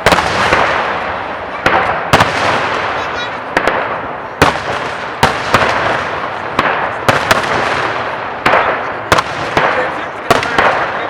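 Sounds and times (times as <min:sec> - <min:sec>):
firework crackling: 0:00.0 - 0:11.0.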